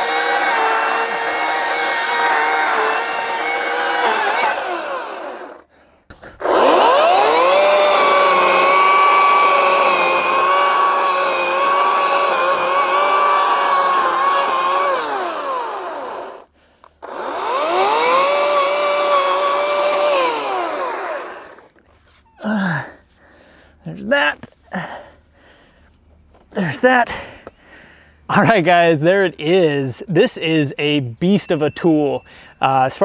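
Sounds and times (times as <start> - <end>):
electric chainsaw cutting wood: 0.0 - 5.7, 6.4 - 21.8.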